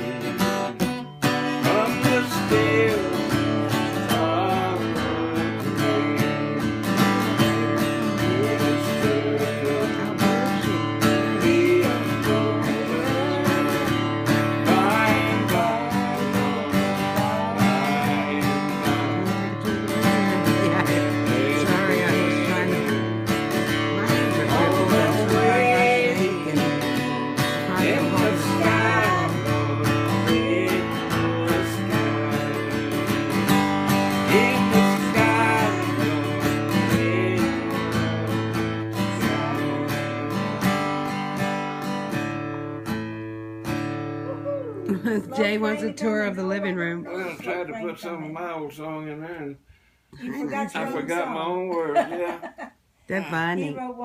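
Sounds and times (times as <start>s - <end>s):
acoustic guitar country instrumental: 0.0s - 54.0s.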